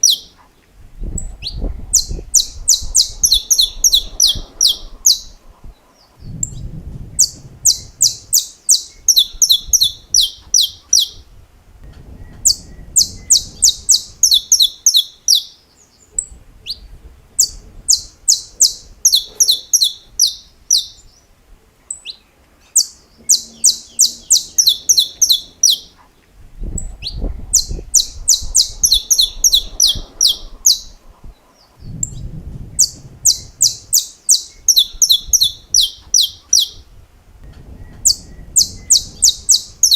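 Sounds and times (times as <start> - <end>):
finch singing sharp high notes: 17.4 - 21.1, 22.8 - 26.0, 27.6 - 31.0.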